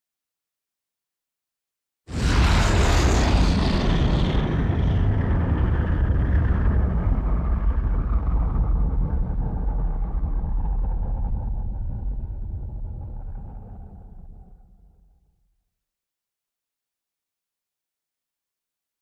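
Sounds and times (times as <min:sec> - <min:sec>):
deep loud rumbling: 0:02.1 - 0:14.9.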